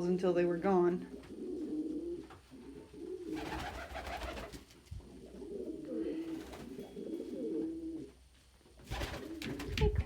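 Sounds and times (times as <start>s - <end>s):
pigeons cooing: 1.1s - 4.5s, 5.1s - 8.2s.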